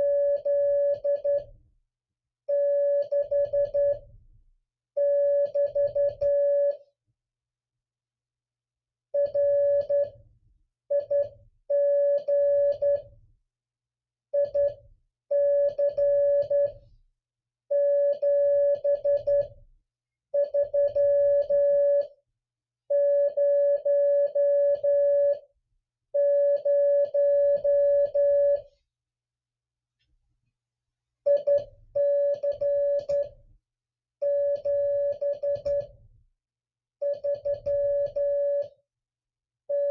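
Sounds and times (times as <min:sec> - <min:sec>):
morse code beeps: 0:00.0 - 0:01.5, 0:05.0 - 0:06.8, 0:14.4 - 0:16.8, 0:17.7 - 0:19.5, 0:20.4 - 0:22.1, 0:22.9 - 0:25.4, 0:26.2 - 0:28.7, 0:31.3 - 0:33.4, 0:34.2 - 0:36.0, 0:37.0 - 0:38.8.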